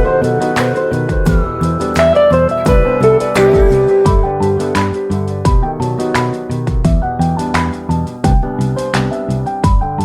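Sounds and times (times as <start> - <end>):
kick-drum hits: 0.0 - 2.0, 2.7 - 8.8, 9.6 - 10.0
melodic notes: 0.0 - 8.6.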